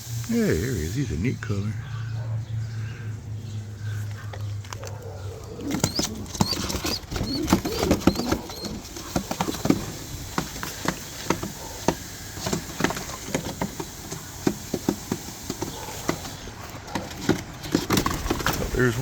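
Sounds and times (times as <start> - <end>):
pigeons cooing: 0.0 - 19.0
pigeon claws scratching floor: 4.7 - 19.0.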